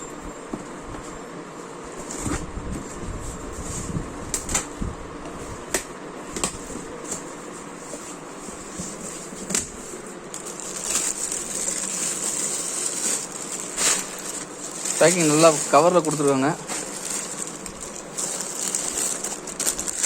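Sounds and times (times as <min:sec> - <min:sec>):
packaging crinkling and rustling: 0:08.6 - 0:20.0.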